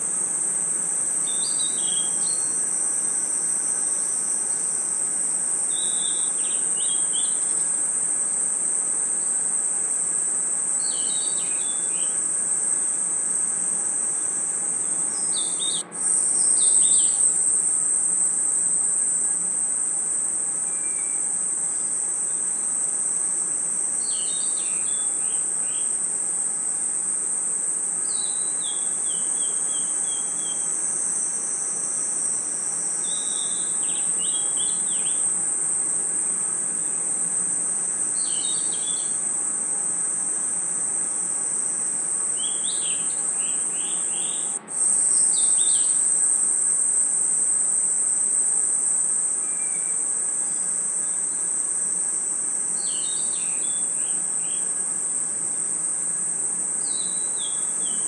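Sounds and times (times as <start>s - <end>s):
crickets and insects trilling: 0.0s - 58.0s
short insect chirps: 0.0s - 58.0s.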